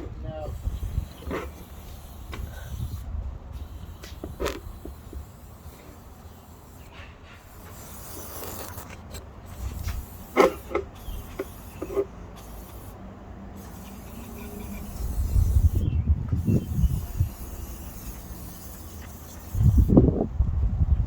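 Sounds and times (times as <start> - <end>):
hands scraping engine parts: 6.7 - 12.6.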